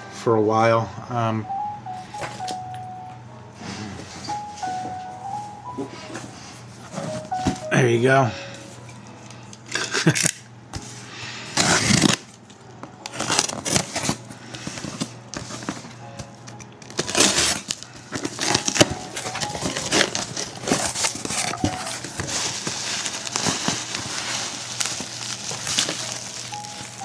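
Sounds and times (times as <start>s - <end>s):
plastic packaging crinkling and tearing: 9.1s - 10.5s, 11.6s - 27.0s.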